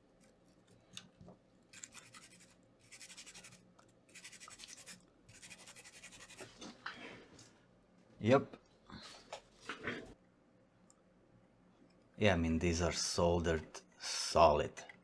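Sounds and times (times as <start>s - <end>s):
cotton swab scrubbing circuit board: 1.7s - 6.5s.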